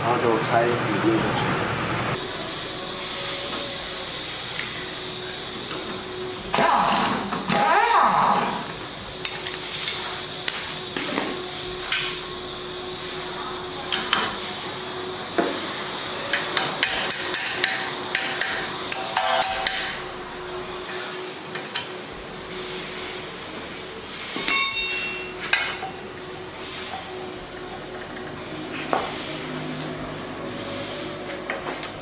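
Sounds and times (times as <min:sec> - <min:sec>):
hammer on metal: 0:16.8 - 0:20.1
rapid sharp metal strikes: 0:16.8 - 0:20.1.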